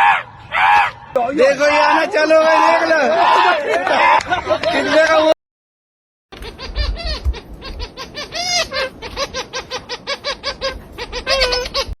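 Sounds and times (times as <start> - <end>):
bird calling rapidly: 6.4 - 12.0.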